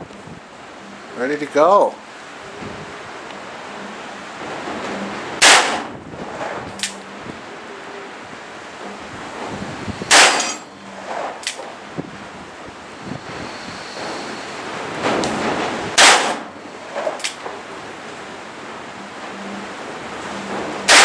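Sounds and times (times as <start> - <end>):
wind noise: 0.0 - 0.7, 2.3 - 3.2, 4.4 - 7.5, 8.2 - 10.9, 11.6 - 16.0.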